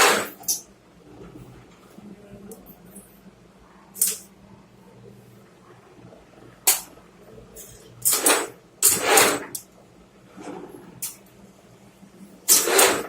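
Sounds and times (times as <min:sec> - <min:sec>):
hard parts clattering and scraping: 0:07.6 - 0:09.6.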